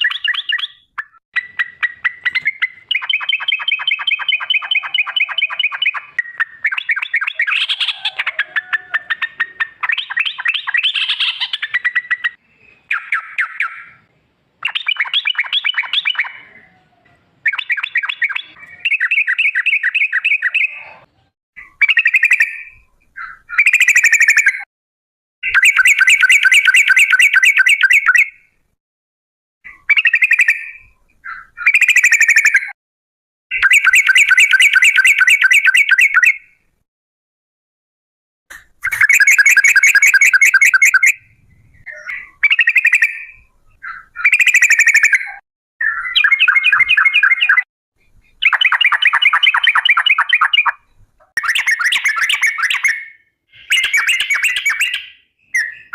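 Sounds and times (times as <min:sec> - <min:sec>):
bird calling in rapid rattling trills: 0:38.9 - 0:41.2.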